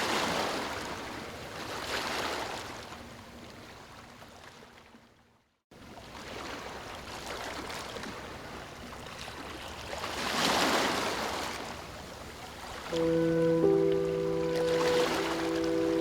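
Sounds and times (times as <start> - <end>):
ocean waves washing: 12.9 - 16.0
wave breaking: 12.9 - 16.0.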